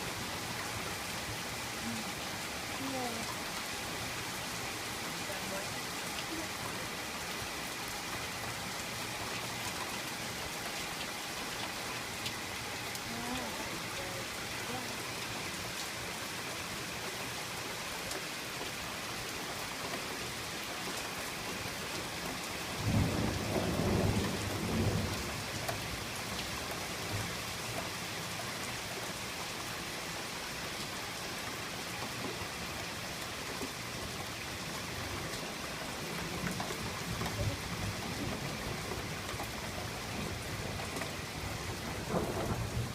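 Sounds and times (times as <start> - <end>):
steady rain: 0.0 - 42.9
thunder rumble: 22.8 - 25.3, 41.4 - 42.9.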